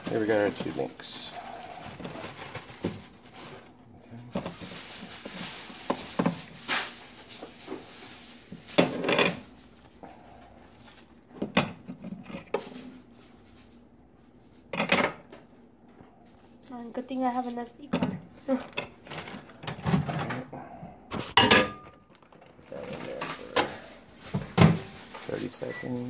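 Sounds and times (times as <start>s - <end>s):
knocks and clicks of kitchen items: 11.3s - 12.8s, 14.7s - 16.1s, 17.8s - 20.5s, 21.1s - 25.0s.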